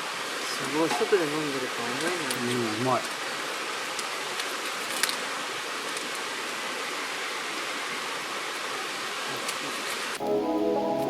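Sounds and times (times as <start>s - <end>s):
stream water rushing: 0.0s - 11.0s
background music: 10.2s - 11.0s.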